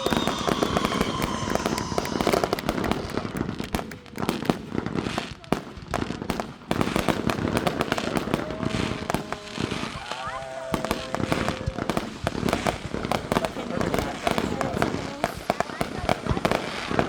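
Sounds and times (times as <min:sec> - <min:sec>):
faint falling whistle: 0:00.0 - 0:03.2
fireworks crackling pops: 0:00.0 - 0:17.0.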